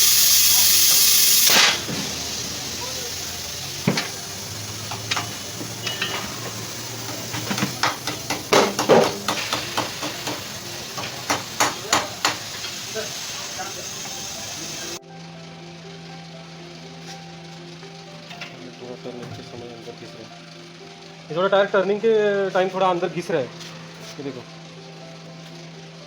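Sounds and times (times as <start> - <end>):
loud hiss: 0.0 - 15.0
metal clicks and clanks: 3.8 - 12.8.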